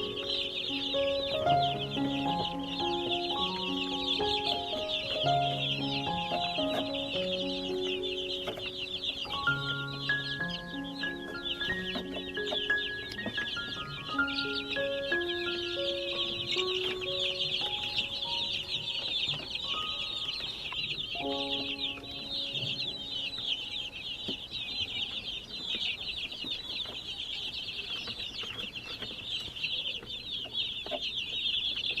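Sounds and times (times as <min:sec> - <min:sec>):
held musical notes: 0:00.0 - 0:25.4
baby chicks peeping: 0:00.0 - 0:32.0.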